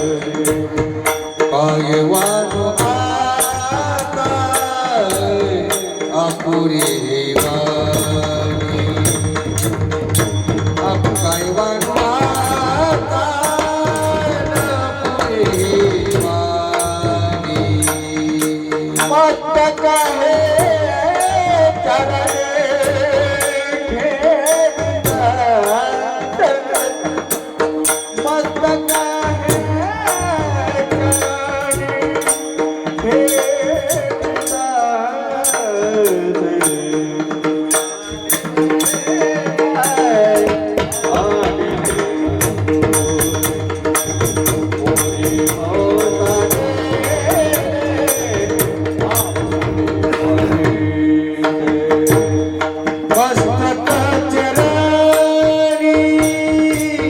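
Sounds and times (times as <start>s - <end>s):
hand drum beat: 0.0s - 34.8s, 35.5s - 57.0s
person singing ornamented melody: 10.7s - 57.0s
small hand cymbals: 20.0s - 50.6s.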